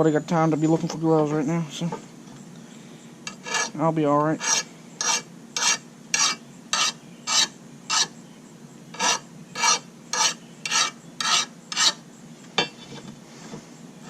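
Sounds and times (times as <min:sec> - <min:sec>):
hand file rasping on steel blade: 0:03.3 - 0:03.8, 0:04.4 - 0:08.1, 0:08.9 - 0:12.0.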